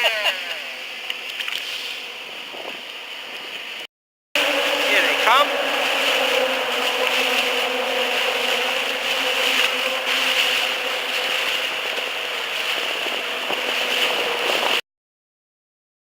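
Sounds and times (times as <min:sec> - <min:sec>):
boat motor humming: 0:00.0 - 0:14.8
broad rushing hiss: 0:01.6 - 0:03.6.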